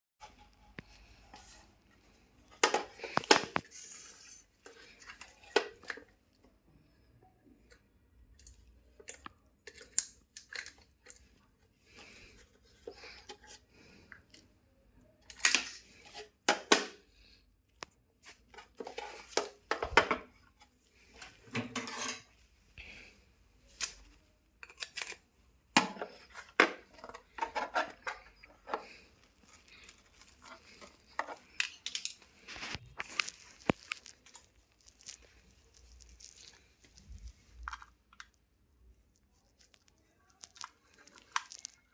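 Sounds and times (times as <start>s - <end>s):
small hard parts clicking and scraping: 7.6s - 14.5s, 24.6s - 38.4s, 39.1s - 41.9s
parts clattering: 18.3s - 22.5s, 23.7s - 38.0s.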